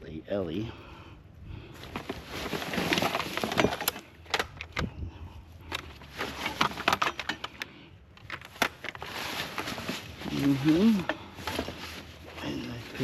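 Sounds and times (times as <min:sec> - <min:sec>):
hard objects clattering: 0:01.8 - 0:04.9, 0:05.6 - 0:13.0.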